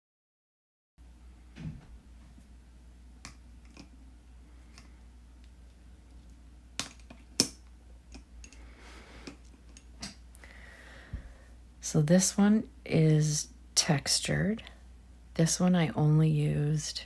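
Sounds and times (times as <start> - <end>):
low steady hum: 1.0 - 17.0.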